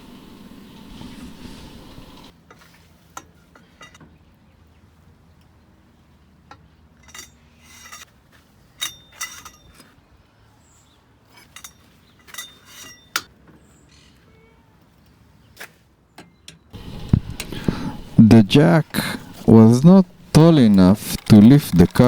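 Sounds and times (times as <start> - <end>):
metal hand tools clinking: 11.5 - 13.3, 16.8 - 22.0.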